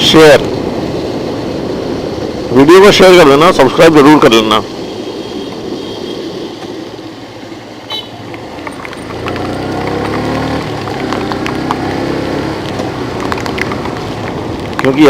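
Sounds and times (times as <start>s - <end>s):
raindrops ticking: 8.2s - 12.0s, 12.6s - 15.0s.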